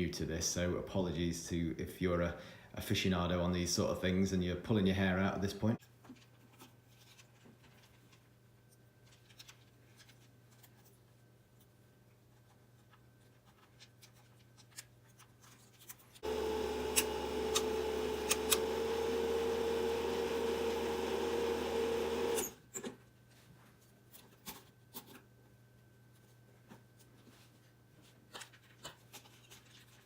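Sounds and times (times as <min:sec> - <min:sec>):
film projector humming and whirring: 0:16.2 - 0:22.6
projector mechanism clicks: 0:16.9 - 0:18.7.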